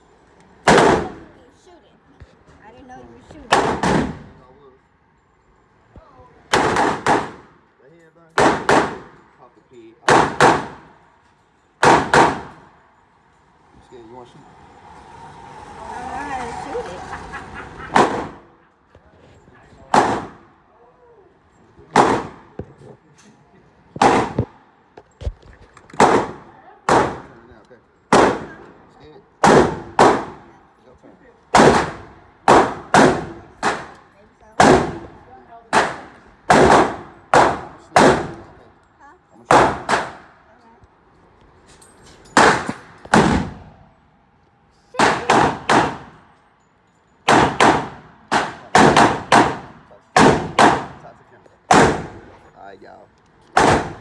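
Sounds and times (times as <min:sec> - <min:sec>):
gunshots with echo: 0:00.6 - 0:01.4, 0:03.5 - 0:04.5, 0:06.5 - 0:07.7, 0:08.4 - 0:09.4, 0:10.0 - 0:11.1, 0:11.8 - 0:12.8, 0:17.8 - 0:18.6, 0:19.8 - 0:20.6, 0:21.8 - 0:22.8, 0:24.0 - 0:24.6, 0:25.9 - 0:27.5, 0:28.1 - 0:30.6, 0:31.5 - 0:38.7, 0:39.5 - 0:40.4, 0:42.4 - 0:43.8, 0:45.0 - 0:46.3, 0:47.3 - 0:52.4, 0:53.5 - 0:54.0.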